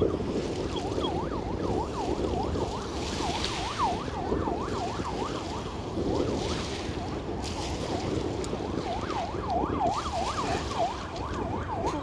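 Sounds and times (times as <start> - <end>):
wind rumble on microphone: 0.0 - 12.0
ambulance siren yelping: 0.6 - 5.5, 8.9 - 12.0.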